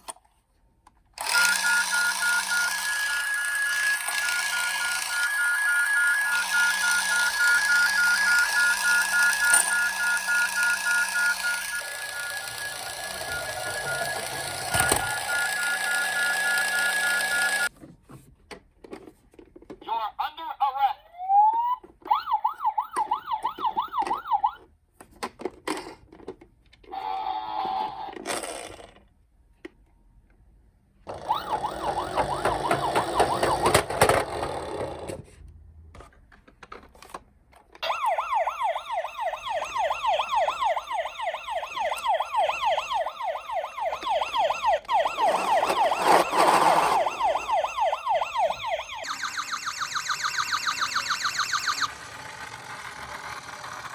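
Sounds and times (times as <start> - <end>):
toy electronic siren yelping: 1.2 - 17.7, 20.3 - 24.6, 31.1 - 33.9, 37.8 - 51.9.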